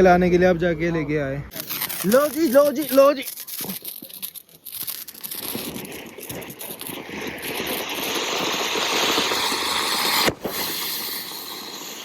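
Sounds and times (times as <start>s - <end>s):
firecracker crackling: 1.5s - 12.0s
firecracker hissing: 1.5s - 12.0s.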